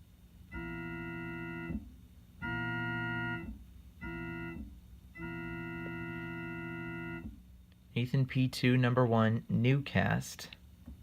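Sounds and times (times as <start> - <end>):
keyboard organ chord blasts: 0.5 - 7.3.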